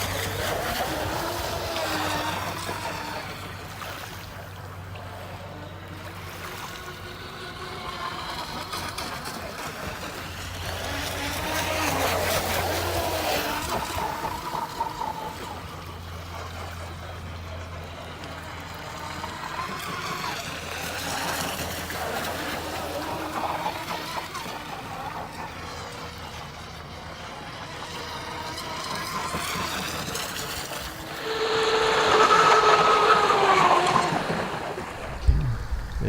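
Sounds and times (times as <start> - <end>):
electric motor whining: 0.0 - 16.6, 27.1 - 36.0.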